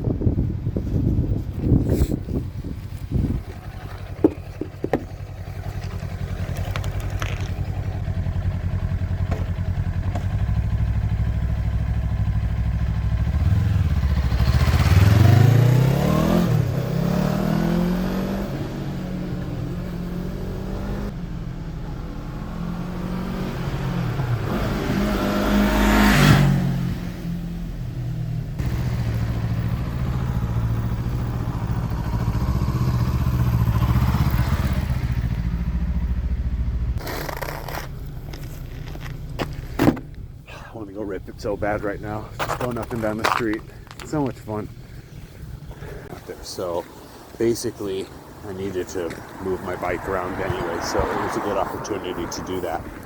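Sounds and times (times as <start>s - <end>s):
motorcycle engine revving: 1.9s - 40.4s.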